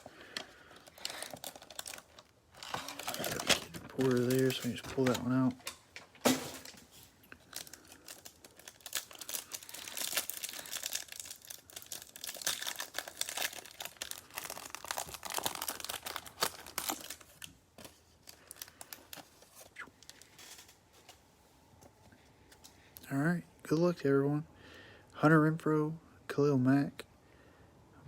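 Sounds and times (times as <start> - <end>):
card packaging being torn open: 0.0 - 5.5, 7.5 - 17.6.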